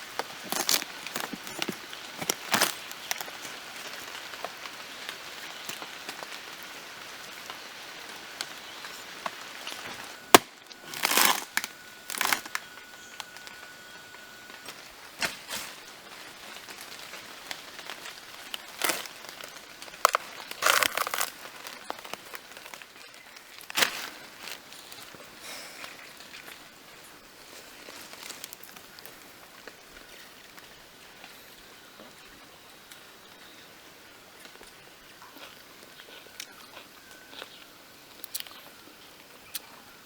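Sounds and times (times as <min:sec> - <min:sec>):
rotten wood breaking: 0:00.2 - 0:03.5, 0:09.7 - 0:12.7, 0:18.0 - 0:24.6.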